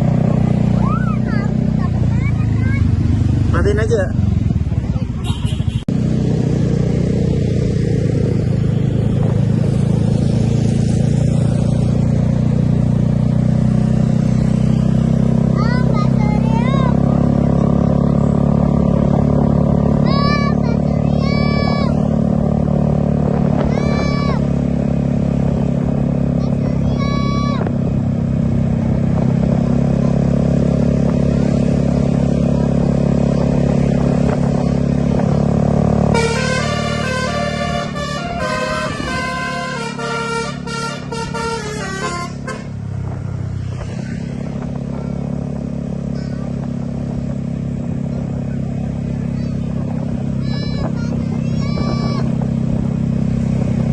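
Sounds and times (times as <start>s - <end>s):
large vehicle engine running: 0.0s - 53.9s
multi-tone bus horn melody: 5.2s - 5.9s, 36.0s - 42.9s.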